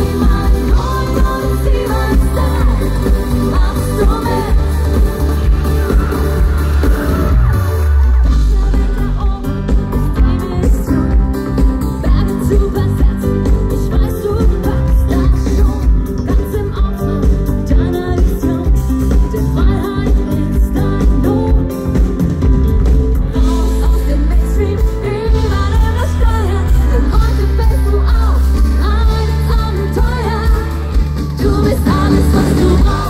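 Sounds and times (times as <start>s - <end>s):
live band pop music: 0.0s - 33.0s
person singing: 23.3s - 33.0s.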